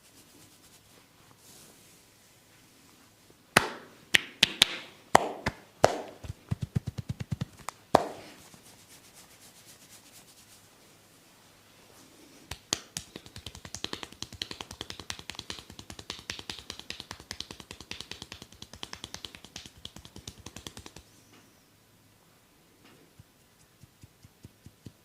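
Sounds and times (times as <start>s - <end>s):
hands snapping and tapping on head: 3.6s - 8.2s, 12.5s - 21.1s, 23.8s - 25.0s.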